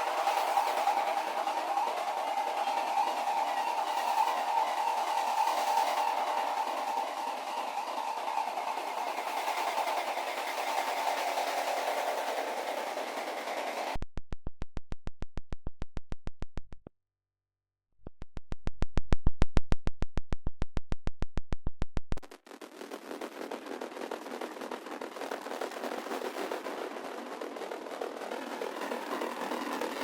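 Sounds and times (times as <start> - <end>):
hissing synth texture: 0.0 - 14.0
fast percussive hits: 0.0 - 16.8, 18.2 - 30.0.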